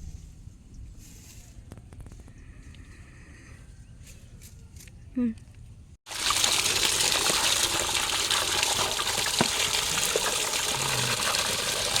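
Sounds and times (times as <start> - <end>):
water running: 6.1 - 12.0.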